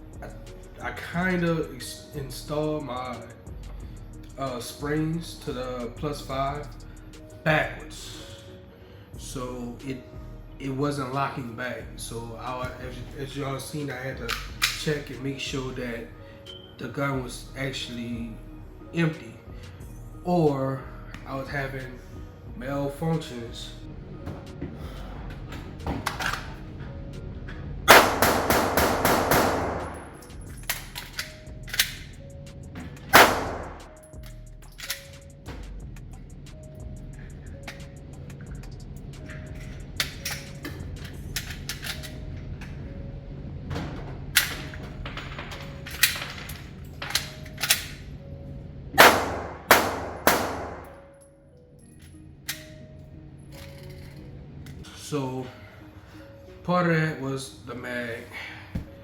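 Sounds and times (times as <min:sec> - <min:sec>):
pistol shots: 0:27.9 - 0:30.3, 0:33.1 - 0:33.9, 0:49.0 - 0:50.9.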